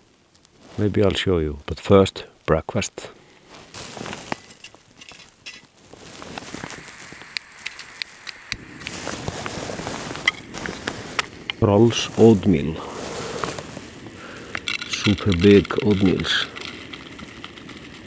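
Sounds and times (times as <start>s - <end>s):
utensils and packaging clinking: 3.8s - 18.0s.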